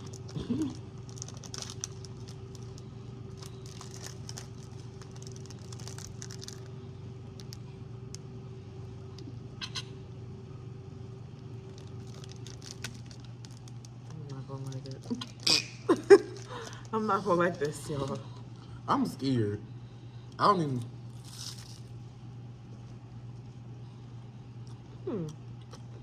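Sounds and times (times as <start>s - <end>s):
plastic wrapper crinkling: 0.0s - 6.7s, 7.3s - 7.6s, 11.4s - 18.2s, 21.1s - 22.0s
steady low hum: 0.0s - 26.0s.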